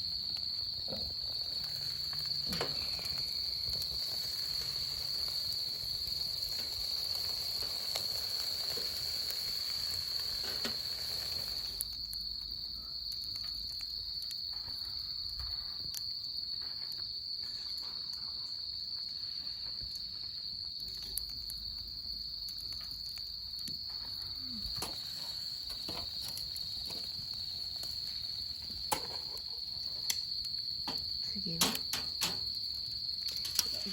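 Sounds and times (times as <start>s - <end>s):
campfire crackling: 0.0s - 33.9s
crickets trilling: 0.0s - 33.9s.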